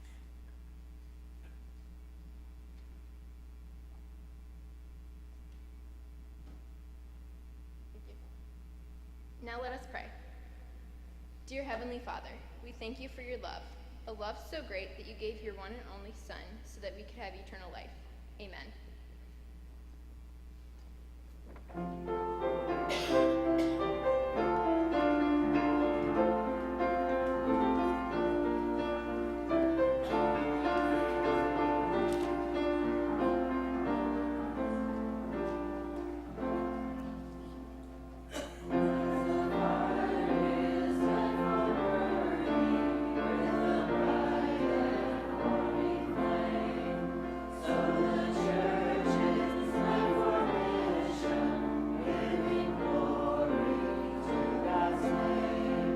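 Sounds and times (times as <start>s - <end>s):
low electrical hum: 0.0s - 55.9s
choir singing with instruments: 22.3s - 37.1s, 38.3s - 55.9s.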